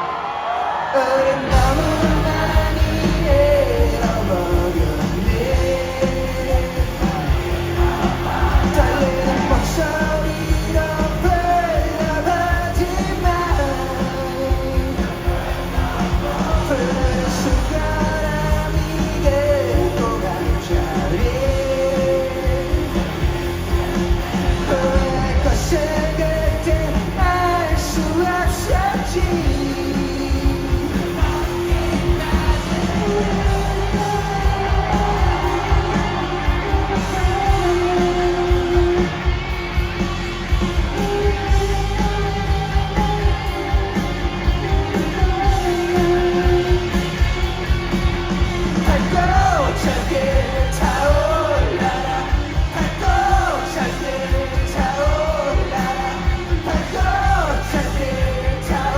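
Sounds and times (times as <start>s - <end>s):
rock band playing: 0.0s - 58.9s
person singing: 0.8s - 23.0s, 24.4s - 39.3s, 48.8s - 58.9s.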